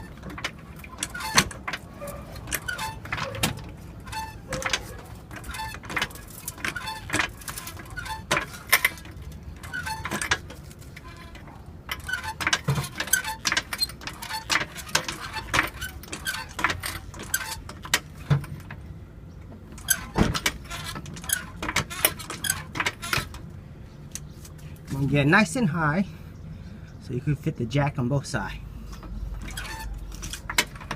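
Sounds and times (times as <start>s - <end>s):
floor jack clicking and clanking: 0.0s - 18.6s.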